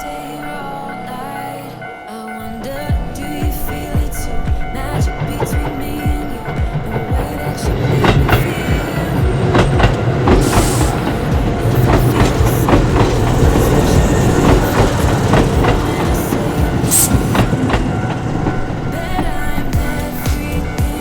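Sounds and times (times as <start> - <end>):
train rumble: 2.7 - 21.0
train wheels clattering over rail joints: 5.2 - 18.3.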